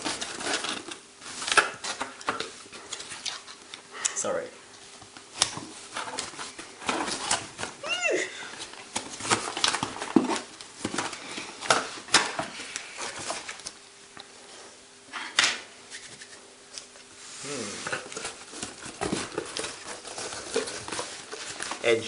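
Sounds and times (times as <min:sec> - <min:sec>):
packaging rustling: 0:00.0 - 0:03.6, 0:05.2 - 0:07.8, 0:08.5 - 0:13.7, 0:17.8 - 0:22.0.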